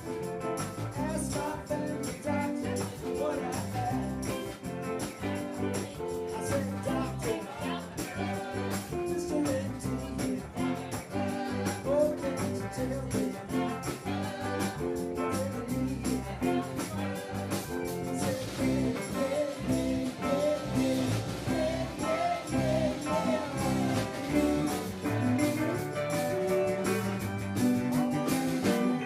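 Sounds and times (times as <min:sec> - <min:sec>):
live rock band playing: 0:00.0 - 0:29.0.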